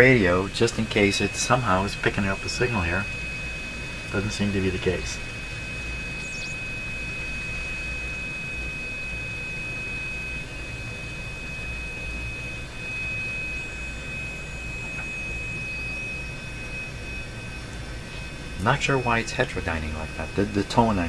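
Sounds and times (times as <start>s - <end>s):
radio hiss: 0.0s - 7.4s, 18.0s - 21.0s
low hum: 0.0s - 21.0s
high heterodyne whistle: 0.9s - 21.0s.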